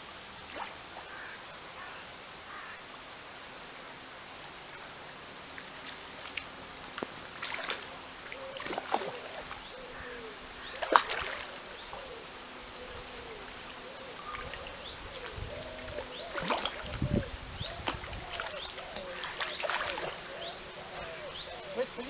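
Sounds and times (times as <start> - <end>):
fish splashing in water: 5.6 - 22.0.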